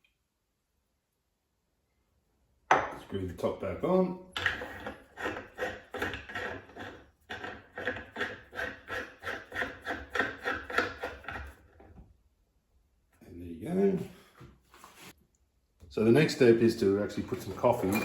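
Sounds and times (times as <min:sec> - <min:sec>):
screw cap threads rasping: 0:04.4 - 0:11.6.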